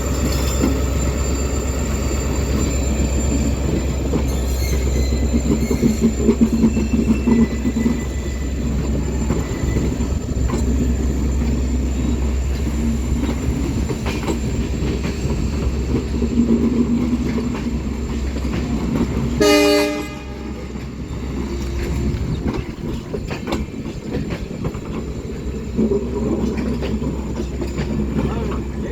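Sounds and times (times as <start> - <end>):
locomotive horn blast: 19.4 - 20.8.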